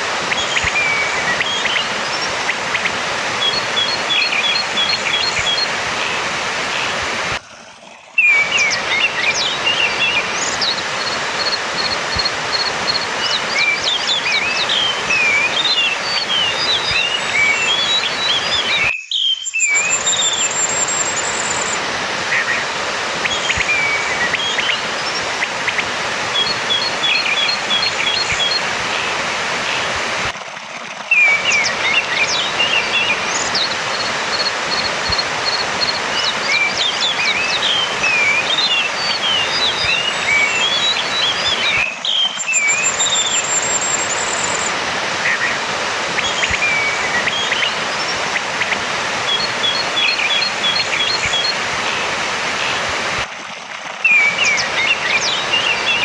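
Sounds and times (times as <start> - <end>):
steady rushing noise: 0.0 - 7.4, 24.9 - 41.9
thrush singing: 0.0 - 7.4, 26.2 - 30.4, 31.1 - 53.3, 54.0 - 56.0.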